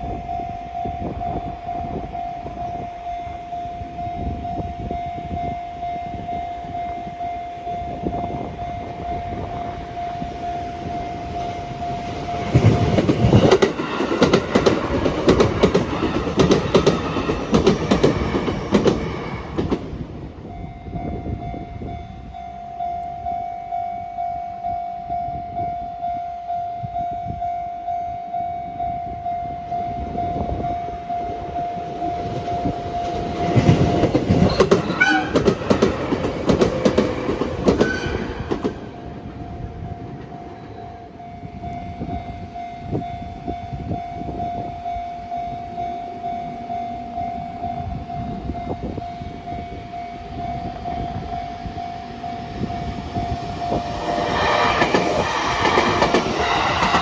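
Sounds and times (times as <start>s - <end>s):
level-crossing alarm ringing: 0.0s - 57.0s
train wheels clicking over rail joints: 12.0s - 20.2s, 31.8s - 42.2s, 52.6s - 57.0s.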